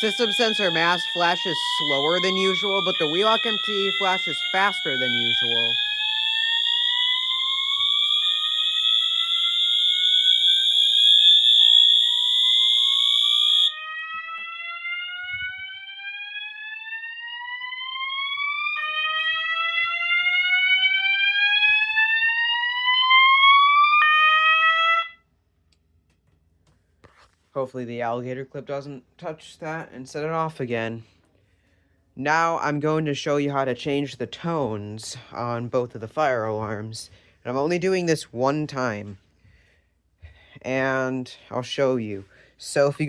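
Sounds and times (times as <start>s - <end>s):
fire alarm whooping sweeps: 0.0s - 25.2s
fire alarm horn steady high tone: 0.0s - 25.3s.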